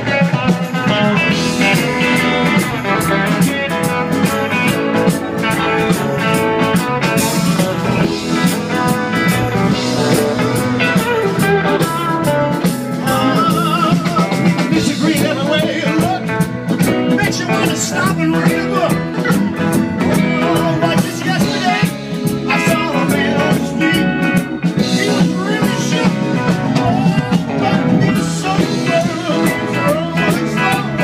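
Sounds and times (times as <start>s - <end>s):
electric guitar: 0.0s - 31.0s
steady drum beat: 0.0s - 31.0s.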